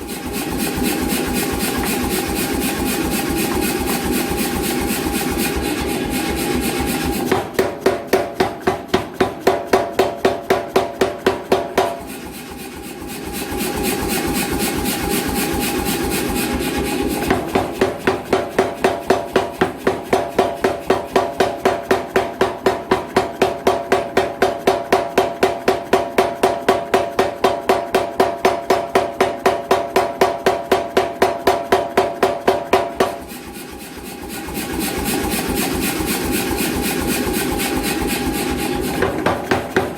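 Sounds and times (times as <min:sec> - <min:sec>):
power hammer running: 0:00.0 - 0:07.7, 0:11.8 - 0:21.2, 0:33.0 - 0:39.9
power hammer striking hot steel: 0:00.2 - 0:39.9.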